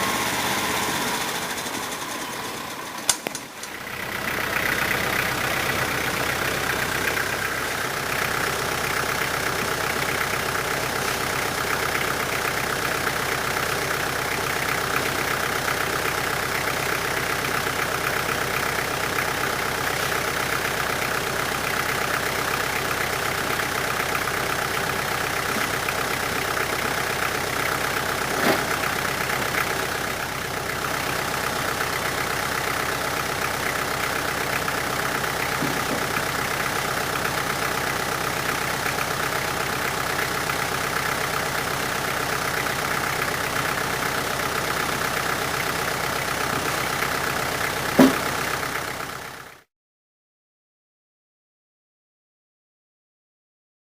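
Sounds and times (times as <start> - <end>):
sawmill engine running: 0.0 - 49.6
sharp knock: 48.0 - 48.2.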